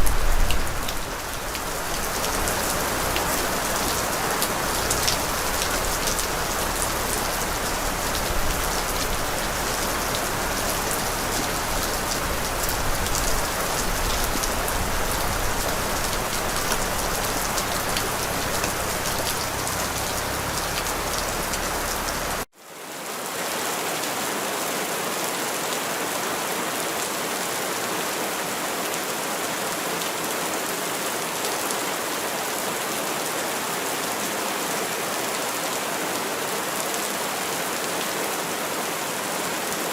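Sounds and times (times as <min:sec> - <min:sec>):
low rumble: 0:00.0 - 0:22.4
heavy rain: 0:00.0 - 0:39.9.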